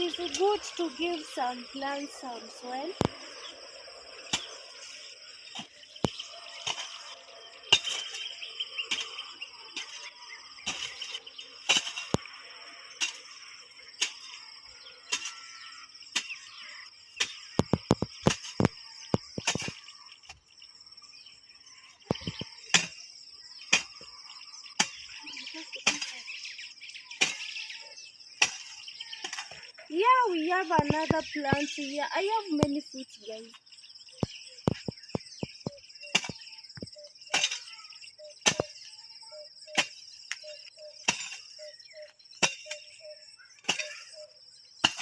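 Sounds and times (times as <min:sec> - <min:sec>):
insects trilling: 0:00.0 - 0:45.0
hand hoe chopping soil: 0:05.6 - 0:09.2, 0:10.7 - 0:12.2, 0:13.0 - 0:13.4, 0:14.0 - 0:14.4, 0:15.1 - 0:15.5, 0:17.2 - 0:20.4, 0:22.1 - 0:23.0, 0:23.7 - 0:24.1, 0:25.8 - 0:26.2, 0:27.2 - 0:27.6, 0:28.4 - 0:29.6, 0:34.7 - 0:37.8, 0:38.4 - 0:38.8, 0:41.1 - 0:41.6, 0:42.4 - 0:42.9, 0:43.6 - 0:44.1.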